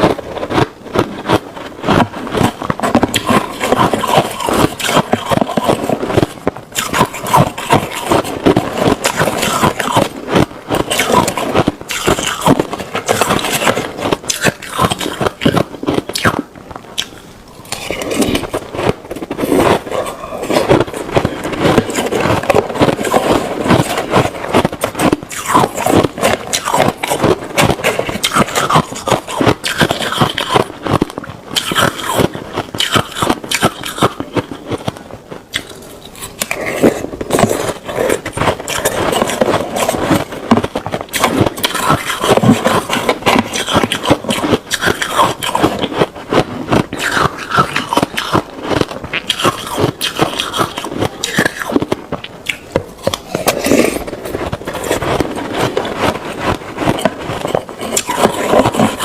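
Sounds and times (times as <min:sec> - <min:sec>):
ice being chewed: 0:00.0 - 0:59.0.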